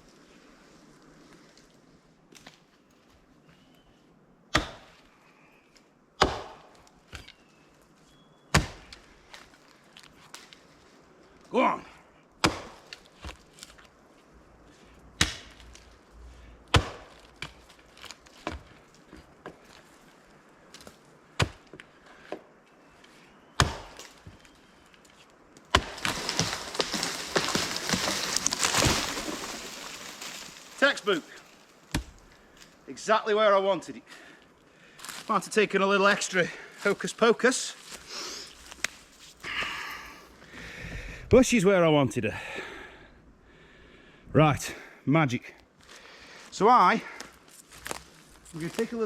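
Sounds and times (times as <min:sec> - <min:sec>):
axe chopping wood: 0:04.5 - 0:05.0, 0:06.2 - 0:07.4, 0:08.5 - 0:09.0, 0:12.4 - 0:13.4, 0:15.2 - 0:15.7, 0:16.7 - 0:18.7, 0:21.4 - 0:21.8, 0:23.6 - 0:24.2, 0:25.7 - 0:30.5, 0:31.9 - 0:32.2
tree trunk cracking: 0:08.5 - 0:11.6, 0:15.2 - 0:22.0, 0:23.6 - 0:32.8, 0:37.8 - 0:41.4, 0:47.1 - 0:49.0
falling tree crashing branches: 0:25.7 - 0:32.3.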